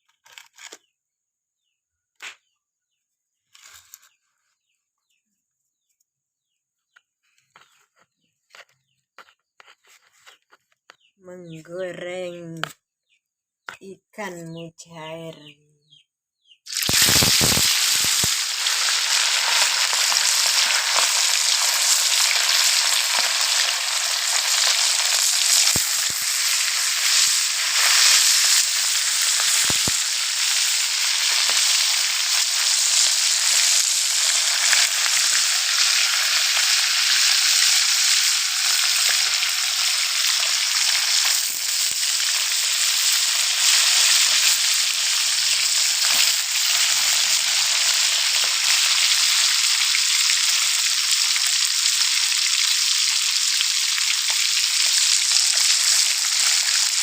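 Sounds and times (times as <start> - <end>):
oil popping: 16.7 - 49.6
fish frying in hot oil: 16.7 - 57.0.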